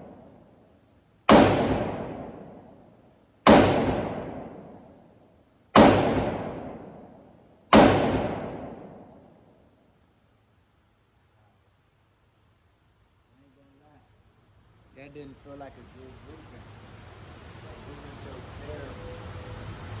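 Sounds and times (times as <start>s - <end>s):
gunshots with echo: 1.3s - 2.6s, 3.5s - 4.8s, 5.8s - 7.1s, 7.7s - 9.4s.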